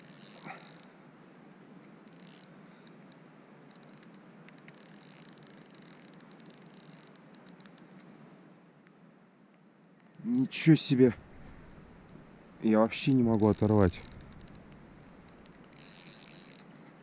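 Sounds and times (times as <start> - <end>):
fishing reel clicking: 0.0 - 0.9, 2.0 - 7.7, 12.9 - 16.7
faint handling rustle: 8.8 - 17.0.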